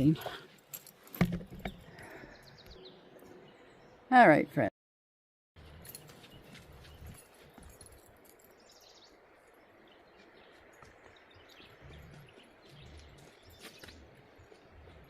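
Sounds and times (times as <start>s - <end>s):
distant bird chirps: 1.5s - 4.1s.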